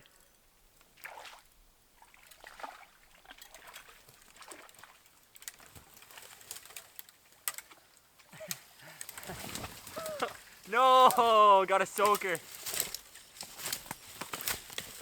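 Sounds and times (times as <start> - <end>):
water splashing at shoreline: 0.9 - 8.8.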